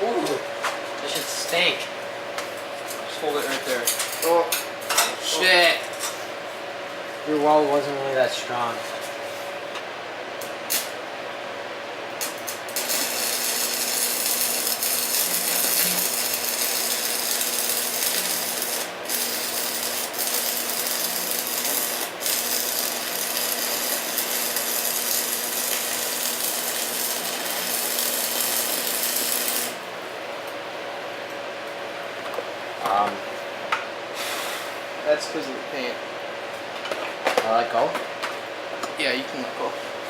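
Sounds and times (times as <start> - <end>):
welding arc crackling: 10.4 - 11.0, 12.1 - 29.9.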